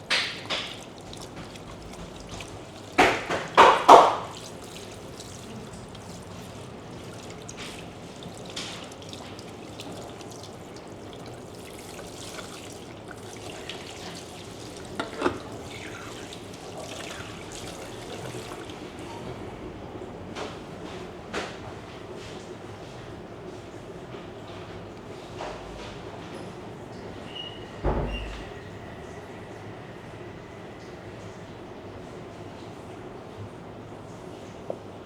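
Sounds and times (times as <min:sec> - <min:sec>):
splashes or knocks: 0:00.0 - 0:19.0
water running from a tap: 0:00.0 - 0:19.8.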